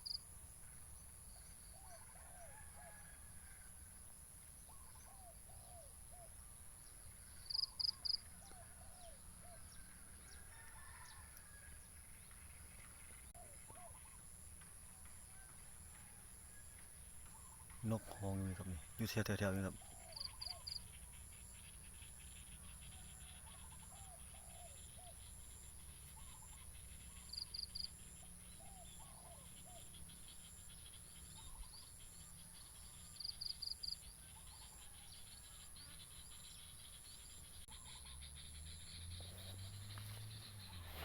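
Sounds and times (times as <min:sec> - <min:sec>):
small bird high call: 0:17.4 - 0:21.1.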